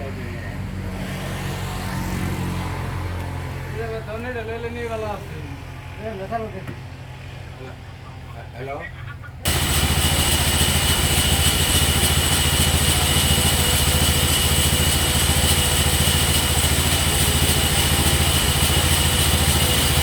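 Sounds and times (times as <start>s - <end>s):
engine low drone: 9.4s - 20.0s.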